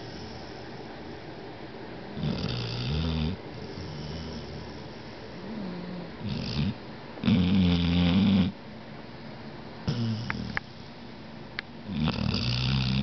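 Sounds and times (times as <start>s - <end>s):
loud rattling snores: 2.2s - 4.9s, 5.5s - 8.5s, 9.9s - 10.6s, 11.9s - 13.0s.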